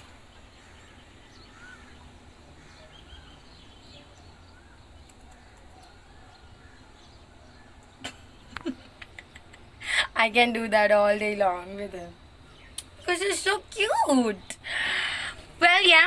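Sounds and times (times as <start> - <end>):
faint birds chirping: 0.0 - 16.0
low ambient hum: 0.0 - 16.0.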